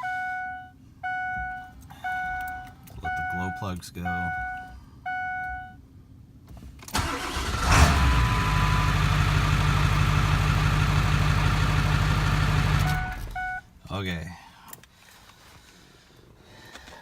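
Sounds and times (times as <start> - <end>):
diesel engine cranking: 6.8 - 13.5
diesel engine idling: 7.0 - 13.4.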